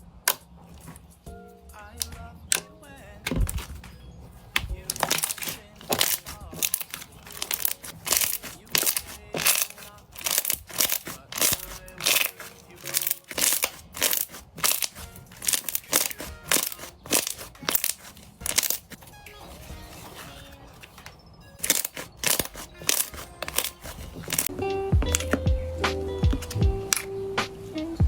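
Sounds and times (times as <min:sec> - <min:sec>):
faint background music: 0:00.0 - 0:28.0
crunchy slime crunching: 0:03.0 - 0:21.0, 0:21.6 - 0:24.5.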